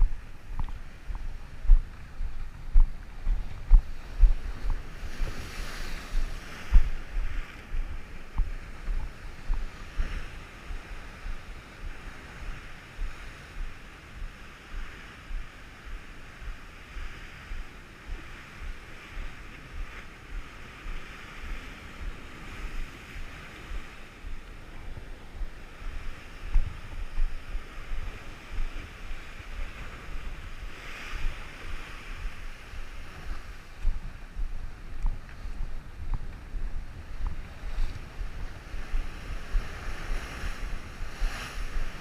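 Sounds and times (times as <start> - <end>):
sea surf breaking: 0.0 - 42.0
wind buffeting microphone: 0.0 - 42.0.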